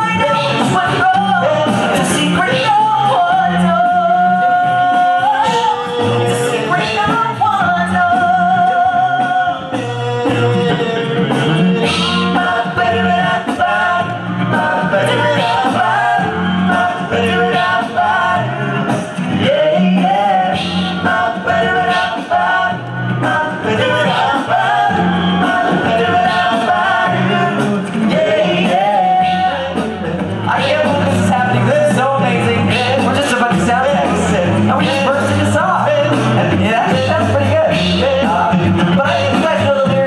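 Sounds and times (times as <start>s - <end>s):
male a cappella group singing: 0.0s - 9.8s, 11.8s - 40.0s
vocal percussive hits: 8.2s - 40.0s.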